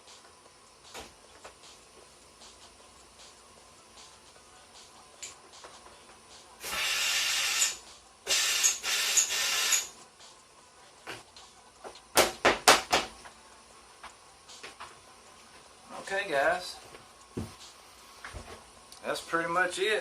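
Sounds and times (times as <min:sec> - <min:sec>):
hissing air blasts: 0:06.6 - 0:09.9.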